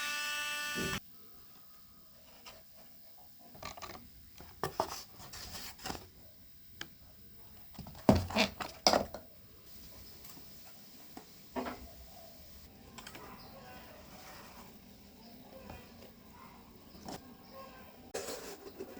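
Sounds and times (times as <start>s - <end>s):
small objects knocking and rustling: 7.7s - 9.3s.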